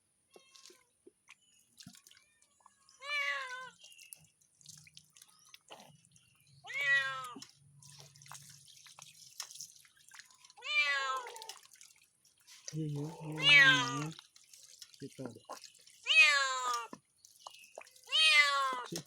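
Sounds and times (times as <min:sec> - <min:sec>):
water dripping: 0:00.4 - 0:19.0
cat meowing: 0:03.0 - 0:03.8, 0:06.7 - 0:07.4, 0:10.6 - 0:11.5, 0:13.2 - 0:14.1, 0:16.0 - 0:16.9, 0:18.1 - 0:18.9.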